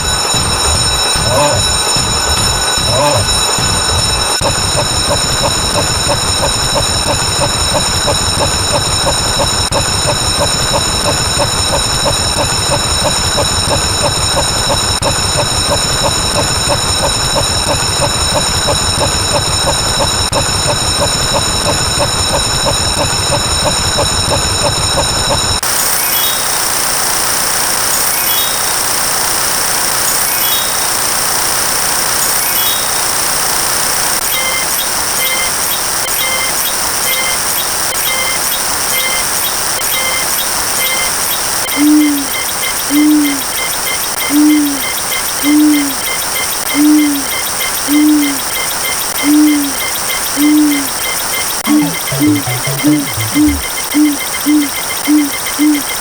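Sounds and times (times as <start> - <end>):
high-pitched whine: 0.0 - 56.0
rain-like hiss: 25.7 - 34.2
low hooting calls: 41.8 - 43.5, 44.3 - 46.1, 46.7 - 48.5, 49.2 - 49.8, 50.4 - 51.0, 51.7 - 56.0
faint short chirps: 44.2 - 56.0
quick pips: 51.6 - 55.8.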